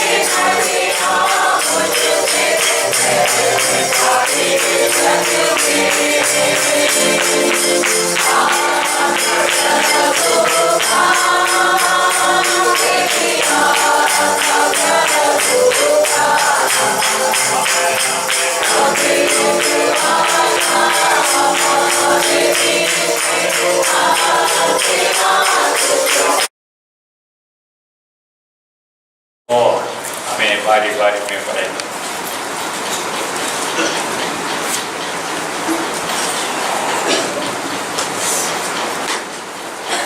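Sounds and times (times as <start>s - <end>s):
people singing worship music: 0.0s - 26.5s
tambourine shaken and struck: 0.0s - 26.5s.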